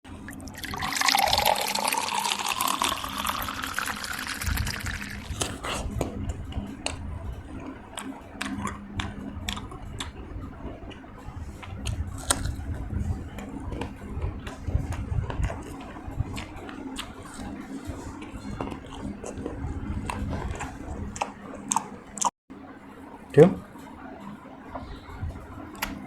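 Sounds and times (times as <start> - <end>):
liquid pouring into container: 0.3 - 5.4.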